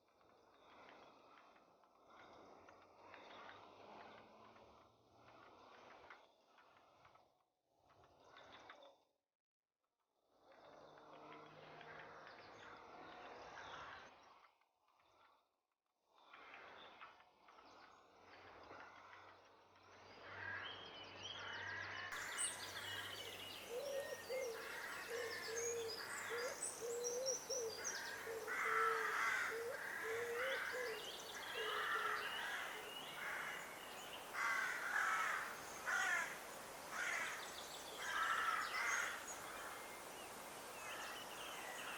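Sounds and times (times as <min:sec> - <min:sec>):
quiet rural ambience: 0:00.0 - 0:09.0, 0:10.3 - 0:41.9
crows cawing: 0:23.8 - 0:27.1, 0:27.8 - 0:39.8.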